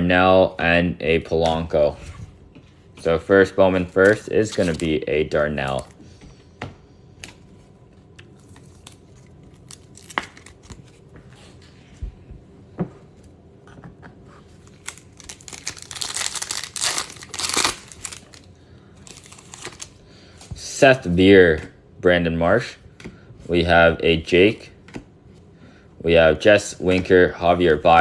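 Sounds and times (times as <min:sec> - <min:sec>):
wrapper tearing and crinkling: 0:08.4 - 0:11.0, 0:14.6 - 0:20.0.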